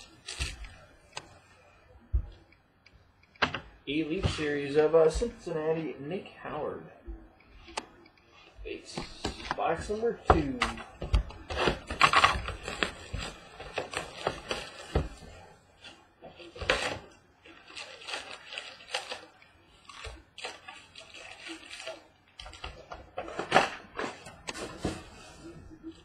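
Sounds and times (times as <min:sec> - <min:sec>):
wrapper and cardboard crinkling: 0:11.5 - 0:25.2.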